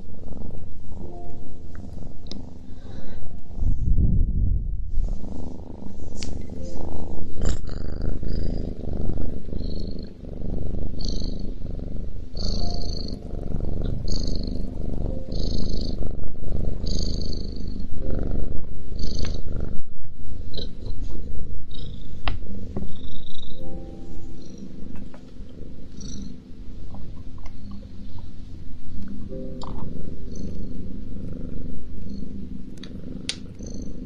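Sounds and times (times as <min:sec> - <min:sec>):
cat purring loudly: 0:00.0 - 0:34.0.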